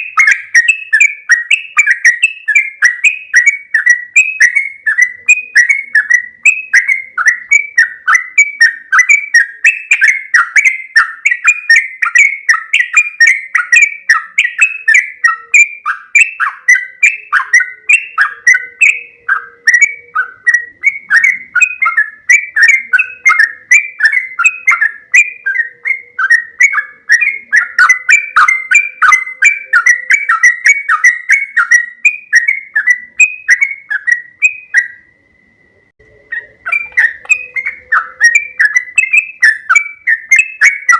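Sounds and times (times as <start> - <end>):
bird singing bubbly chattering notes: 0.0 - 35.2, 35.9 - 40.9.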